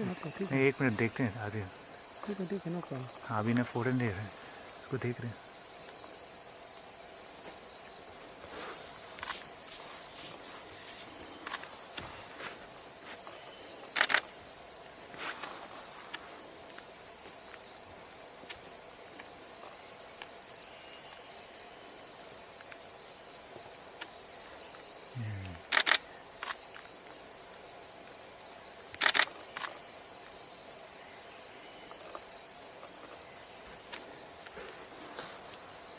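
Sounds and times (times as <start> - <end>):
crickets chirping: 0.0 - 35.9
sharp clicks: 13.9 - 14.3.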